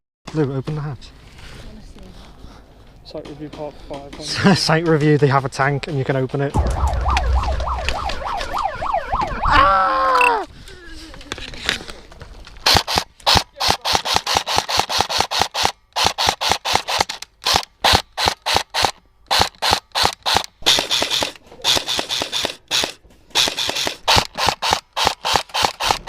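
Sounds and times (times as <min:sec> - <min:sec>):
airsoft gun firing: 0:12.6 - 0:26.0.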